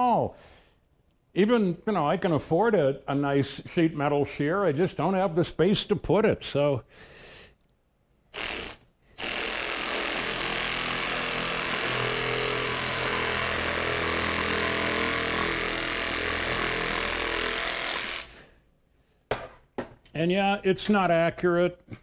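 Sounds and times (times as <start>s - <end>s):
electric power shear cutting metal: 8.4s - 18.4s.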